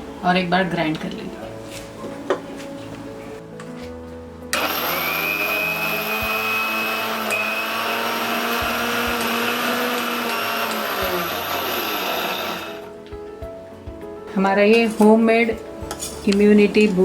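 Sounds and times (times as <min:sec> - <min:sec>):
mixer grinder motor whining: 0:04.5 - 0:12.9.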